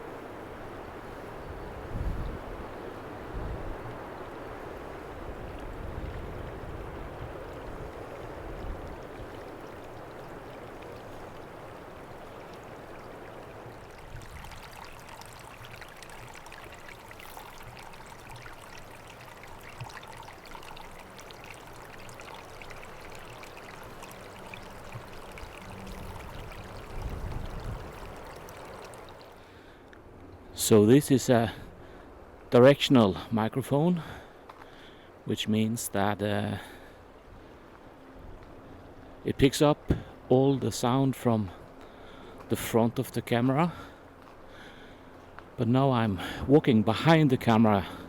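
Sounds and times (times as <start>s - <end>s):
strong wind rumbling on microphone: 0.9s - 9.5s, 25.6s - 28.4s.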